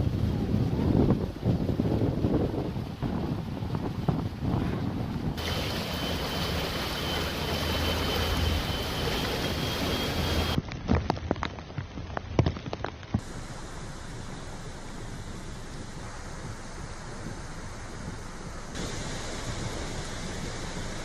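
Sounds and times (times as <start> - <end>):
hurricane wind and heavy rain: 0.0 - 21.0
high wind whistle: 4.5 - 10.6.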